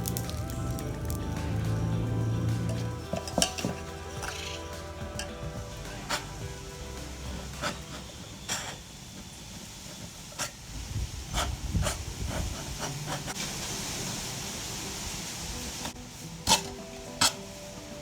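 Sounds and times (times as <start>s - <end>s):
sharp crackles and clicks: 0.0s - 1.7s
stove hissing: 0.0s - 18.0s.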